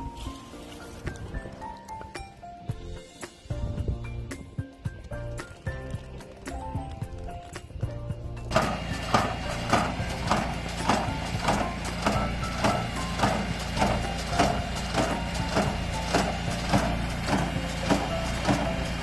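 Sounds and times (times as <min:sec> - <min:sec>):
steady engine hum: 0:05.0 - 0:19.0
regular mechanical clank: 0:08.5 - 0:19.0.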